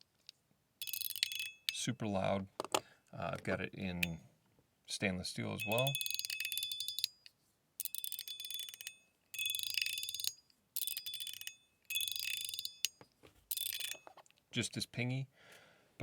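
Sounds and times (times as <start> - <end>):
metal fidget slider clicking: 0.8 - 1.9, 5.6 - 7.2, 7.8 - 14.1
ringing metallic ping: 5.6 - 7.1.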